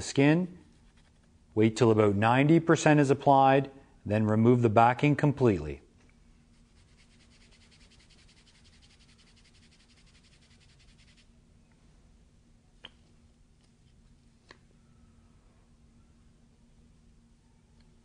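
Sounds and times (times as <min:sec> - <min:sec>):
hands rubbing tape on skin: 0:06.5 - 0:11.3.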